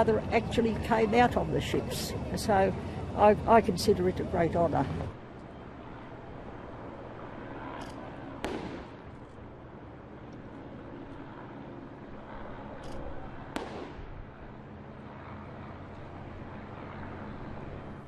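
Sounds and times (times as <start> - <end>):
outdoor background noise: 0.0 - 18.0
distant sharp bangs with echo: 8.4 - 9.2, 13.5 - 14.2.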